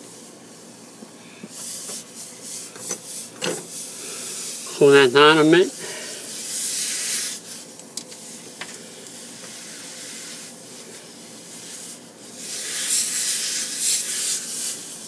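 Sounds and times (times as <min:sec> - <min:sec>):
torch flame hissing: 0:01.5 - 0:15.0.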